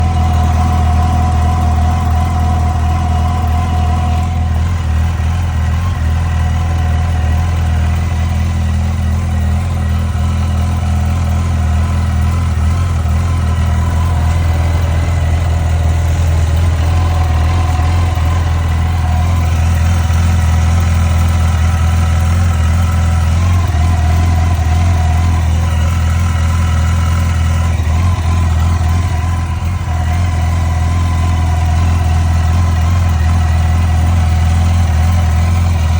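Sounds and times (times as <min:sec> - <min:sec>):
engine ticking: 0:00.0 - 0:35.9
motorcycle engine idling: 0:00.0 - 0:35.9.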